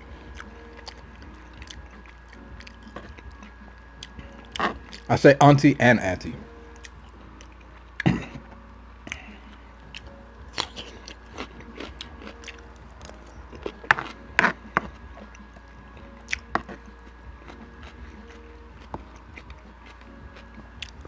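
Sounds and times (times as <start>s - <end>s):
person chewing food: 0.0s - 5.1s, 6.7s - 21.0s.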